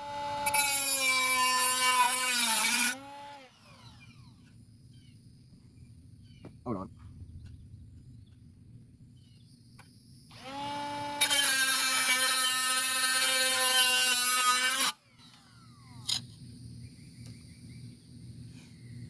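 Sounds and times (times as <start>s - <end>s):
angle grinder cutting sheet metal: 0.0s - 3.5s, 10.4s - 15.0s.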